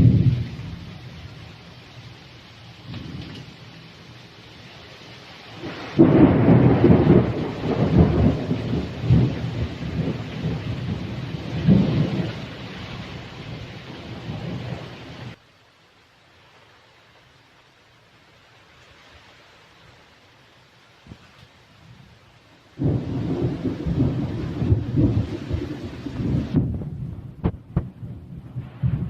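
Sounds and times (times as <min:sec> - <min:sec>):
thunder rumbling: 0:00.0 - 0:04.3, 0:05.4 - 0:15.4, 0:22.8 - 0:29.0
steady rain: 0:00.0 - 0:29.0.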